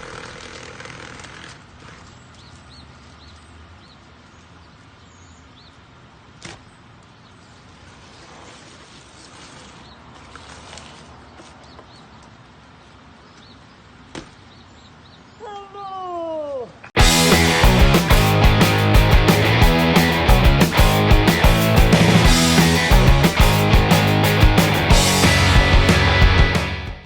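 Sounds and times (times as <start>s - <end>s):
outdoor background noise: 0.0s - 17.6s
small birds chirping: 1.9s - 8.4s, 11.2s - 16.6s.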